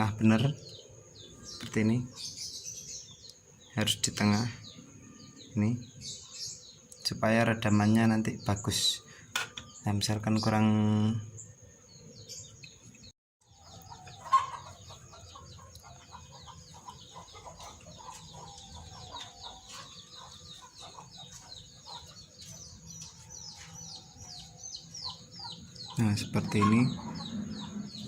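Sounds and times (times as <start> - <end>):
small birds chirping: 0.0 - 28.0
chickens clucking: 13.5 - 28.0.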